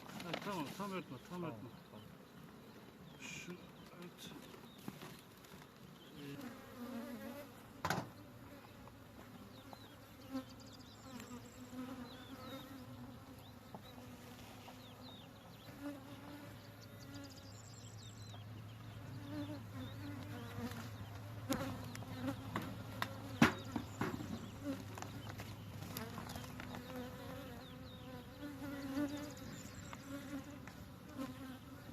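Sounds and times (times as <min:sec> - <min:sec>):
bees buzzing: 0:00.5 - 0:31.9.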